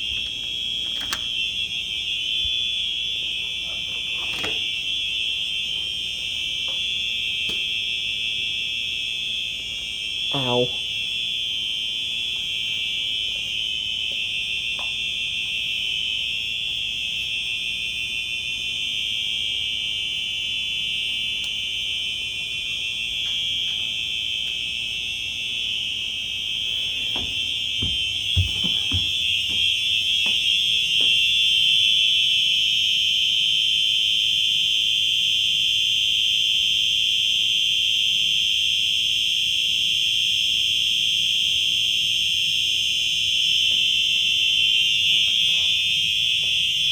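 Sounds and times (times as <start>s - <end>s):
fire alarms sounding: 0.0s - 46.9s.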